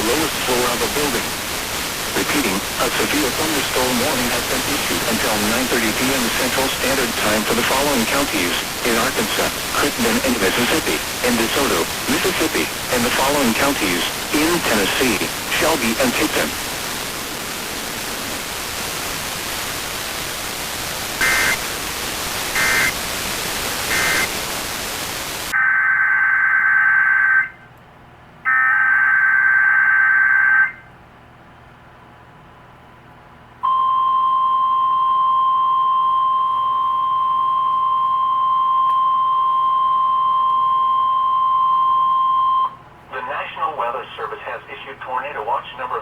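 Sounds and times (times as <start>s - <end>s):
static hiss: 0.0s - 25.6s, 43.1s - 46.0s
data bursts: 21.2s - 21.6s, 22.5s - 23.0s, 23.9s - 24.3s
steady warning alarm tone: 21.2s - 21.6s, 22.5s - 23.0s, 23.9s - 24.3s, 25.5s - 27.7s, 28.5s - 30.9s, 33.6s - 42.8s.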